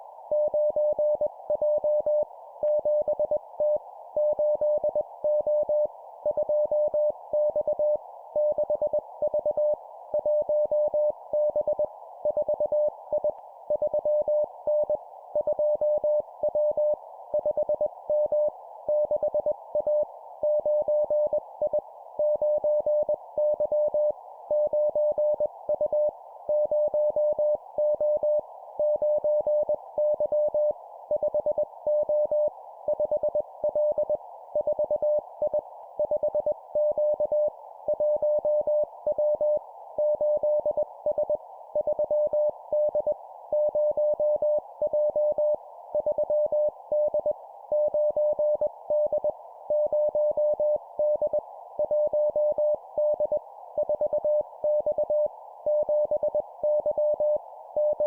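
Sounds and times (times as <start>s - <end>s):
morse code beeps: 36.0s - 58.0s.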